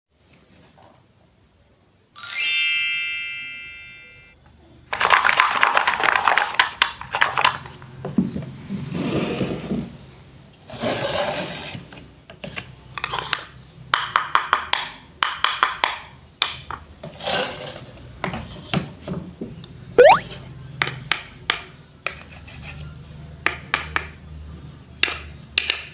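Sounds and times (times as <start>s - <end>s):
bright chime ringing: 2.2s - 4.3s, 20.0s - 20.2s
quick rising tone: 20.0s - 20.3s.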